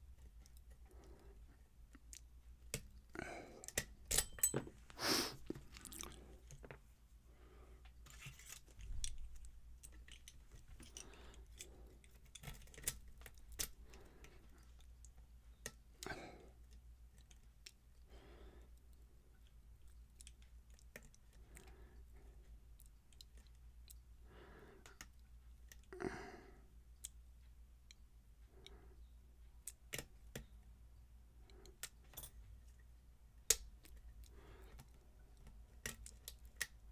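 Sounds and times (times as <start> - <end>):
lock pick clicking and scraping: 3.6 - 4.7, 8.1 - 13.8.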